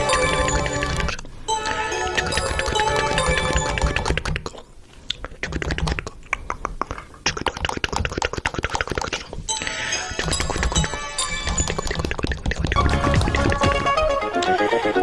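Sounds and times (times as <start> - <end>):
music: 0.0 - 4.2, 9.5 - 12.1, 12.7 - 15.0
cartoon clicks and clinks: 0.0 - 4.6, 8.6 - 14.5.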